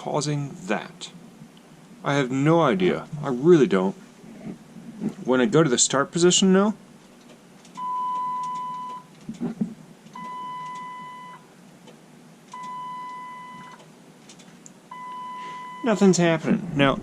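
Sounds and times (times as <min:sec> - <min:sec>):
electronic warning chime beeping: 0:07.8 - 0:09.1, 0:10.2 - 0:11.4, 0:12.6 - 0:13.8, 0:14.9 - 0:16.0.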